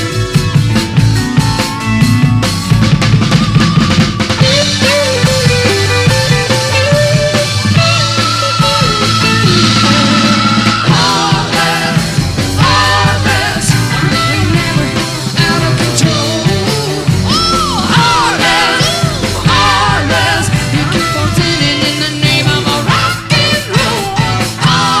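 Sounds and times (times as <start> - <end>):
rock band playing: 0.0 - 25.0
woman singing: 12.6 - 25.0.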